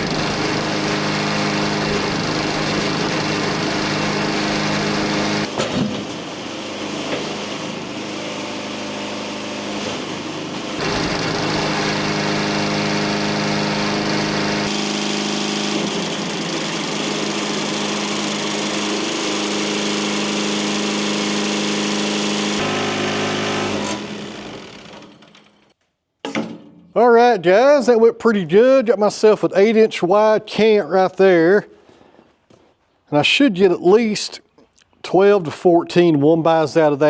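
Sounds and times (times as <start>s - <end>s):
band sawmill cutting log: 0.0s - 5.5s, 6.5s - 25.6s.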